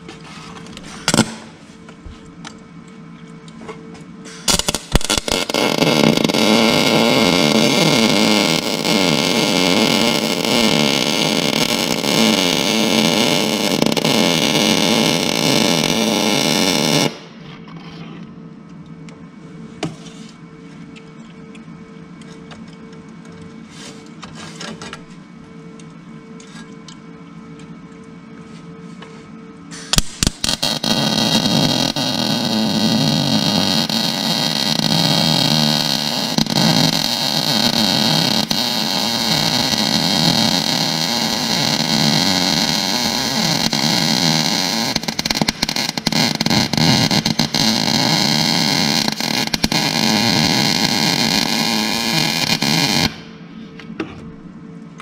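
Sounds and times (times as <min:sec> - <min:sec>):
arc welding crackling: 0:01.0 - 0:01.6, 0:04.3 - 0:17.4, 0:29.8 - 0:53.4
welding arc strikes: 0:01.0 - 0:01.6, 0:04.3 - 0:17.4, 0:29.8 - 0:53.4.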